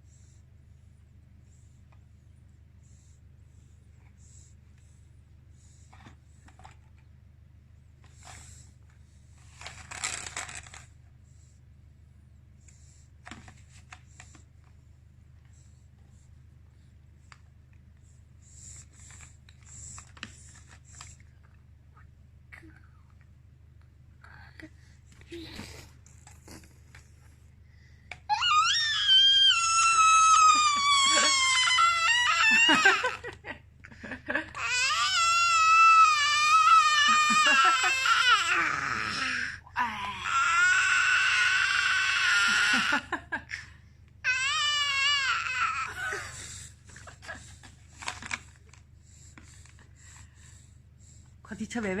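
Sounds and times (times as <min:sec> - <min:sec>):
baby screeching: 0:28.3 - 0:33.1, 0:34.6 - 0:43.0, 0:44.3 - 0:46.0.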